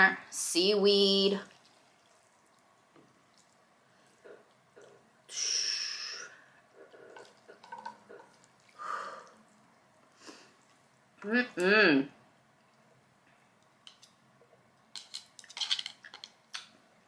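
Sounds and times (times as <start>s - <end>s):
soft chewing and mouth clicks: 1.5s - 3.6s.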